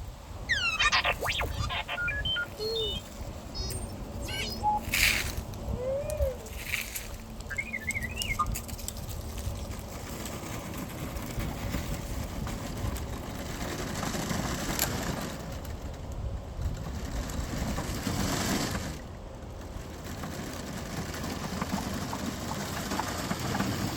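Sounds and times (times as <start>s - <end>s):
robot whistles and chirps: 0.5s - 6.4s, 7.5s - 8.6s.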